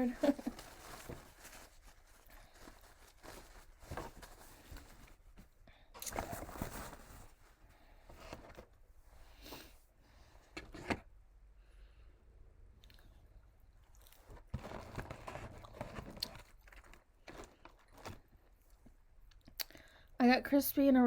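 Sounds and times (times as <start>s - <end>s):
chewing with small crunches: 12.8s - 14.5s, 15.2s - 19.8s.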